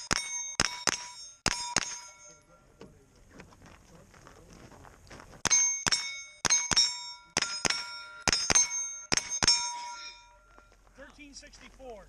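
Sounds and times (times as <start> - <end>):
steel target plate ringing: 0.0 - 2.8, 5.4 - 10.7
carbine shots: 5.4 - 9.7.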